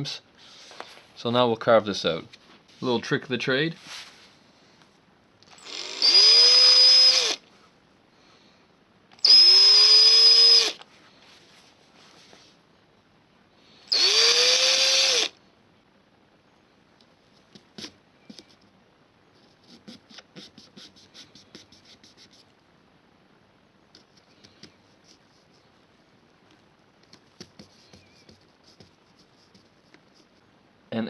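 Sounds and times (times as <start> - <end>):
power drill whining: 5.5 - 7.4, 9.2 - 10.8, 13.9 - 15.4.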